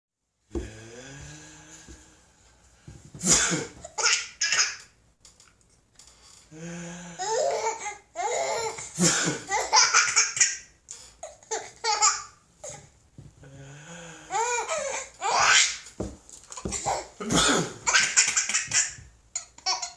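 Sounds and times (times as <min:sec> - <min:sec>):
baby laughing: 0:03.8 - 0:04.9, 0:07.2 - 0:08.9, 0:09.5 - 0:10.6, 0:11.2 - 0:12.8, 0:14.3 - 0:15.8, 0:17.9 - 0:19.9.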